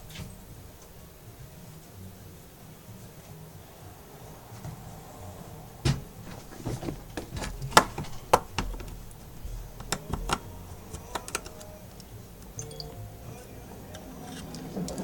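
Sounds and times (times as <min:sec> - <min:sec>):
small tools clicking on work surface: 0:09.8 - 0:12.8.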